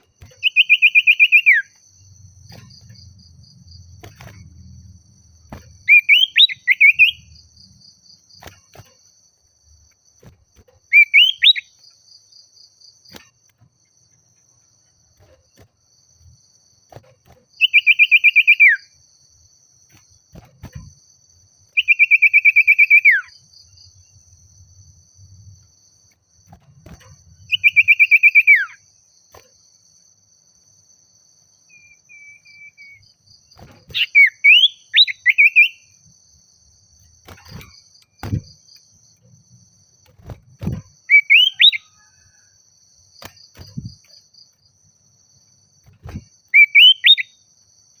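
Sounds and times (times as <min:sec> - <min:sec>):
bird chirps: 0:00.0 - 0:04.8, 0:05.5 - 0:09.0, 0:10.6 - 0:12.3, 0:17.0 - 0:19.0, 0:21.7 - 0:24.2, 0:26.8 - 0:28.8, 0:31.7 - 0:36.1, 0:40.2 - 0:42.6, 0:45.8 - 0:47.5
bird singing rapid trills: 0:00.0 - 0:09.5, 0:10.8 - 0:13.4, 0:17.2 - 0:19.1, 0:21.6 - 0:25.4, 0:26.8 - 0:29.0, 0:31.6 - 0:36.1, 0:37.0 - 0:44.8, 0:46.0 - 0:47.6.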